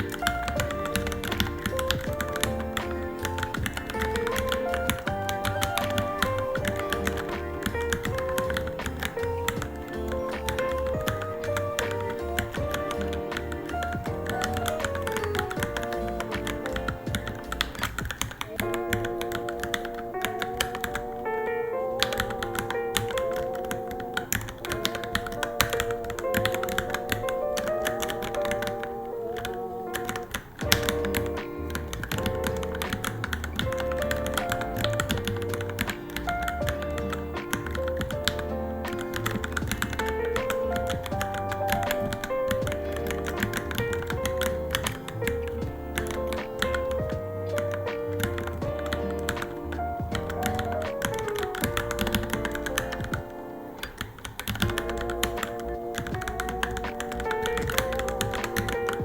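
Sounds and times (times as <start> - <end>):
background music wavering melody: 0.0 - 59.0
mechanical keyboard typing: 0.0 - 59.0.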